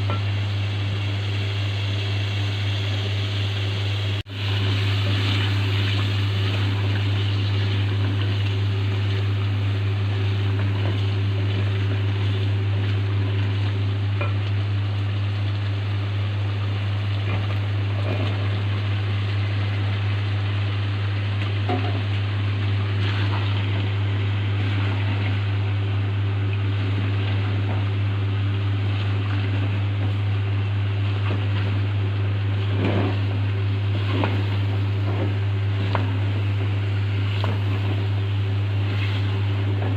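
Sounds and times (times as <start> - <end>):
low mechanical hum: 0.0 - 39.9.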